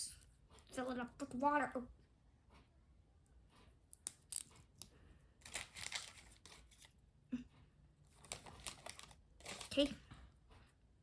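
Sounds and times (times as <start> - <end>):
plastic packaging crinkling: 5.4 - 6.8, 8.2 - 10.0.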